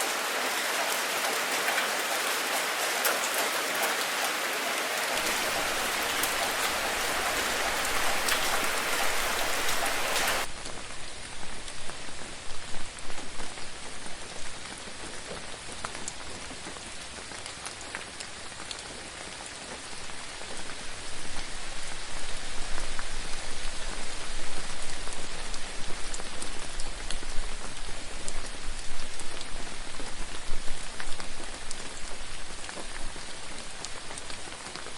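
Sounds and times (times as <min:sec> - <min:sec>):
raindrops ticking: 0:00.0 - 0:10.5
steady rain falling: 0:00.0 - 0:34.9.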